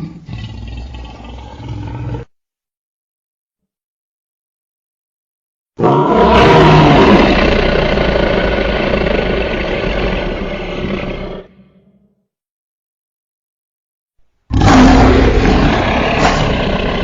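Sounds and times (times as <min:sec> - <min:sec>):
dinosaur roar: 0:00.0 - 0:02.3, 0:05.8 - 0:11.9, 0:14.5 - 0:17.0.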